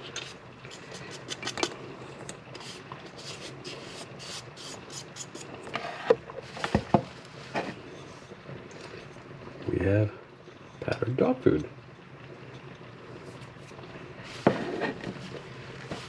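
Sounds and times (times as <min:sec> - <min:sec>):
dry scraping in a grinder cup: 0:00.0 - 0:01.8, 0:02.6 - 0:06.1.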